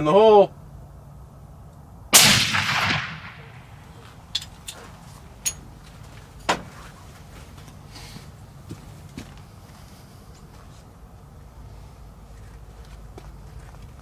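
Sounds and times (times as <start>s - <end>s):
suppressed rifle shot: 2.2s - 3.8s.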